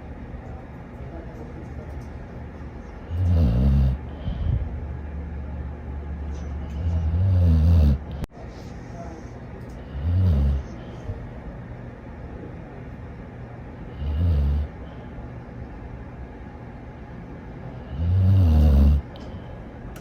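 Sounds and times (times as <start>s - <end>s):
dog snoring: 3.1s - 4.5s, 6.6s - 8.3s, 9.8s - 10.8s, 13.9s - 14.8s, 17.8s - 19.2s.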